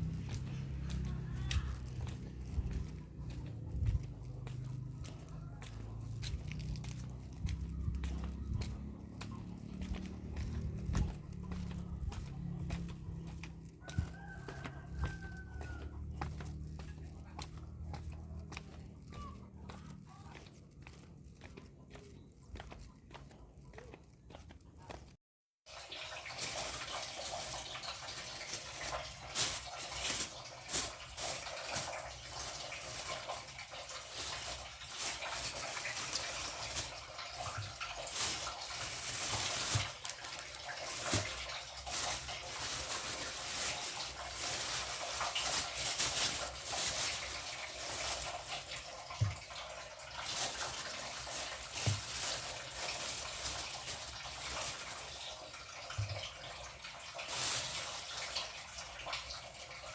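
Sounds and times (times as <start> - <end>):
water running from a tap: 25.7 - 59.9.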